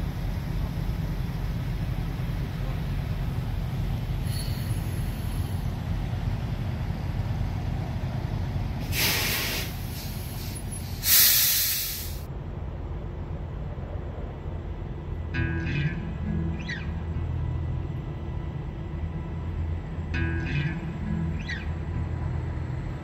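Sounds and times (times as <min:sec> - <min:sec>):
trucks idling: 0:00.0 - 0:23.0
air brakes hissing: 0:04.1 - 0:05.7, 0:08.8 - 0:12.3.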